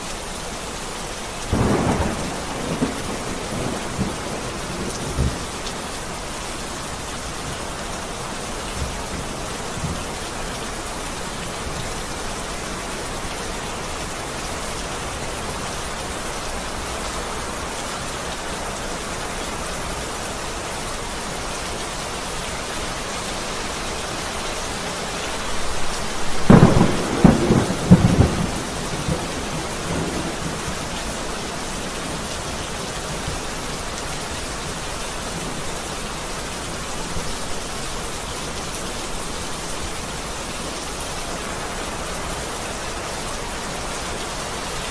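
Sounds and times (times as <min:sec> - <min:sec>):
steady rain: 0:00.0 - 0:44.9
thunder rumbling and cracking: 0:01.5 - 0:05.8, 0:25.3 - 0:33.4.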